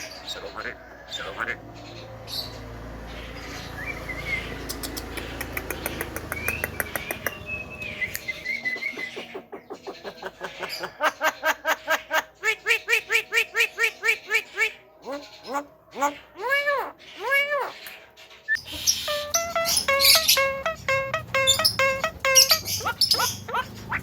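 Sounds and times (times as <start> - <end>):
bird rapid clicks: 4.6 - 7.5
bird repeated pitched notes: 18.5 - 24.0
bird whistled chirps: 18.5 - 24.0.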